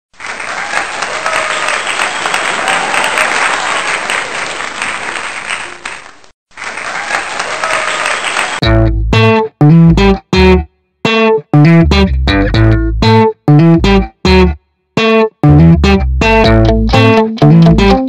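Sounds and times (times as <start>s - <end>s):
crowd applause: 0.1s - 8.6s
bass and guitar music: 8.6s - 18.0s.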